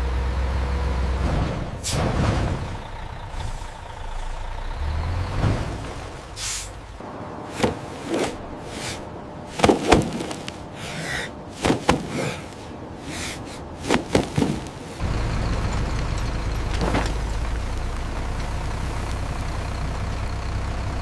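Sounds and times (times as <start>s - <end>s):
low engine rumble: 0.0s - 21.0s
knocks and slams: 7.6s - 8.5s, 9.5s - 10.6s, 11.6s - 12.6s, 13.8s - 14.8s.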